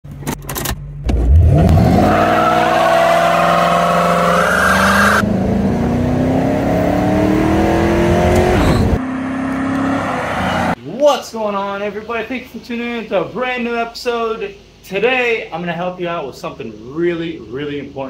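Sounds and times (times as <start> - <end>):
car engine revving: 1.1 - 10.8.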